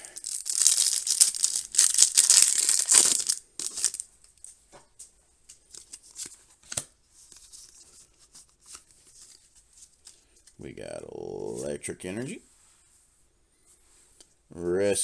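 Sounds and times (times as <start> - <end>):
foil wrapper tearing and crinkling: 0.2 - 4.0.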